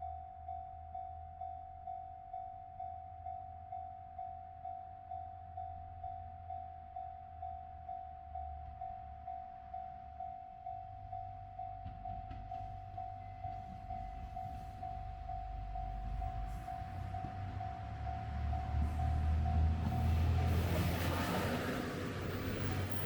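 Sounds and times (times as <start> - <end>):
level crossing warning bell: 0.0 - 21.0
low rumble of approaching train: 0.0 - 23.0.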